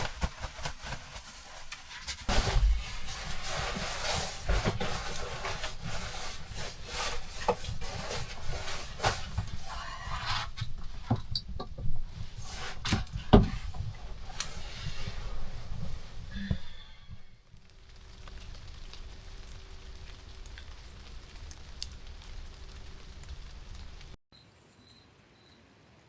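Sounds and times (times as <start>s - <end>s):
rubbing sounds: 0.0s - 16.5s.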